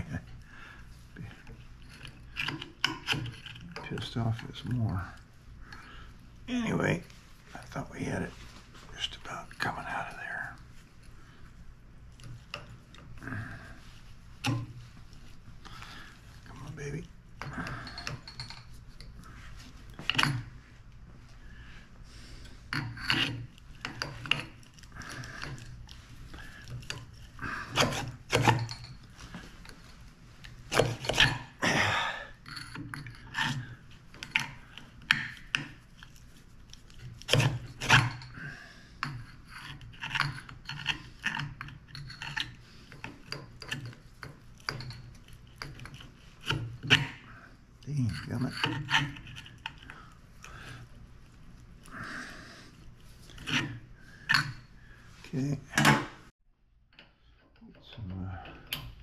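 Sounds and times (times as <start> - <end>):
metal tool scraping inside metal tube: 47.9 - 49.9.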